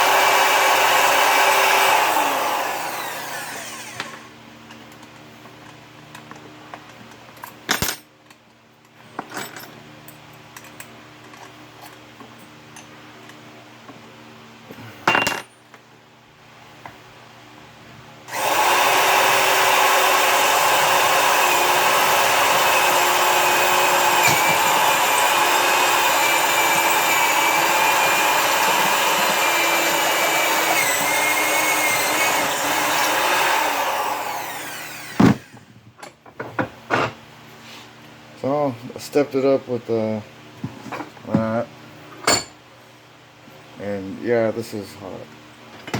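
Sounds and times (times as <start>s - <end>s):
electric drill boring copper pipe: 0.0s - 4.3s, 18.3s - 35.7s.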